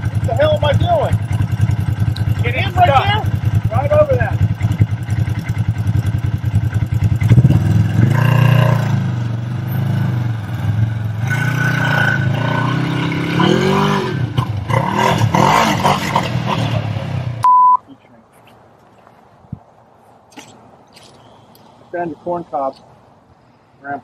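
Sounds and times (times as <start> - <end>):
race car engine revving: 7.1 - 17.4.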